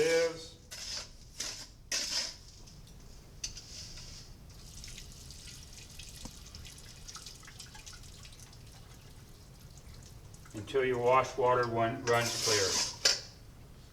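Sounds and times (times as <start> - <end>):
water trickling through sieve: 3.8 - 11.1, 12.1 - 13.1
water poured from a pan: 4.5 - 10.6.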